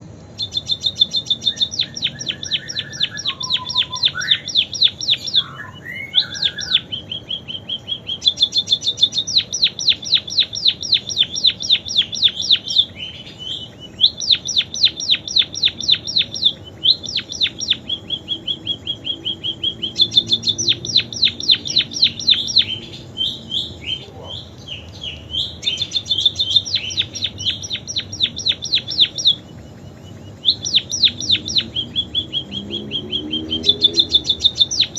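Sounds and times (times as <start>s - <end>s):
bird trilling song: 0.0s - 34.9s
bird whistled glides: 0.4s - 24.1s, 25.0s - 34.9s.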